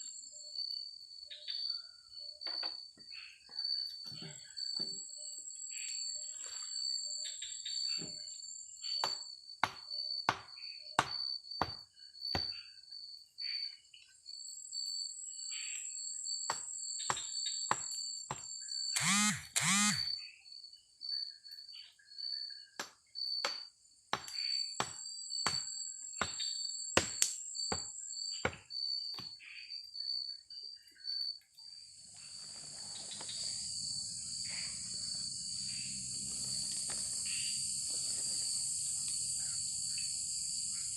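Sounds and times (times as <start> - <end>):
night insects chirping: 0.0 - 40.9
short pitched calls: 19.0 - 20.2.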